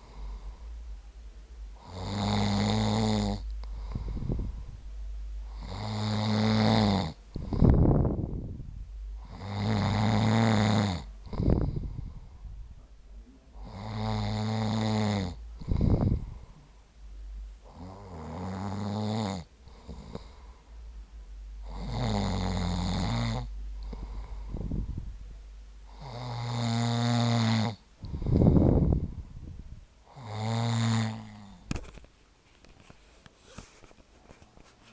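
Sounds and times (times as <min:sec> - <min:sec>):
man snoring: 0:01.8 - 0:04.4, 0:05.5 - 0:08.0, 0:09.2 - 0:12.2, 0:13.6 - 0:16.4, 0:17.7 - 0:20.5, 0:21.6 - 0:24.5, 0:25.9 - 0:29.0, 0:30.1 - 0:31.6.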